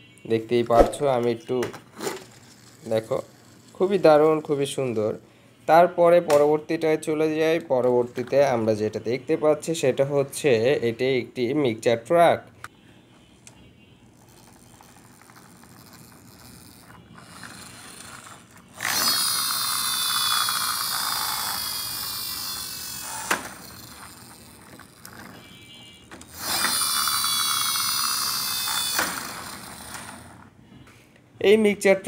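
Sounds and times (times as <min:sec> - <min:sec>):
toy gears whirring: 0:02.0 - 0:04.4, 0:14.2 - 0:30.5.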